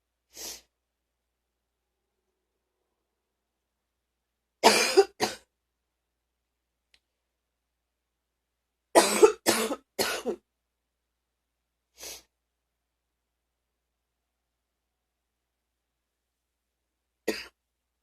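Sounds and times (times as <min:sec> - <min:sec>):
person coughing deeply: 0:04.6 - 0:05.5, 0:09.0 - 0:10.4, 0:17.3 - 0:17.6.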